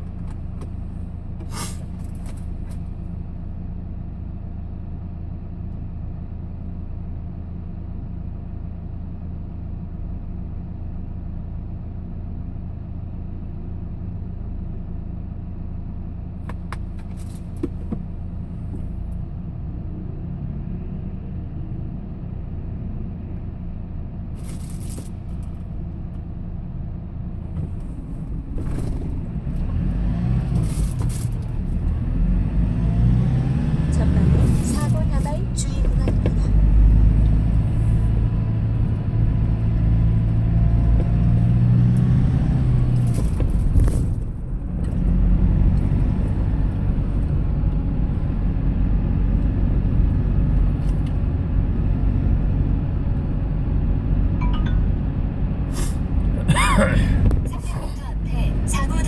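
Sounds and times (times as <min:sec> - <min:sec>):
vehicle engine and road noise: 0:00.0 - 0:59.0.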